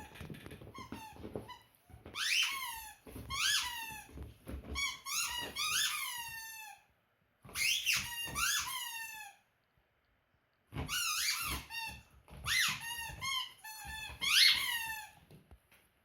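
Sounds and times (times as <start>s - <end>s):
squeaky toy squeaking: 0.0s - 4.1s, 4.7s - 6.9s, 7.5s - 9.4s, 10.8s - 15.2s.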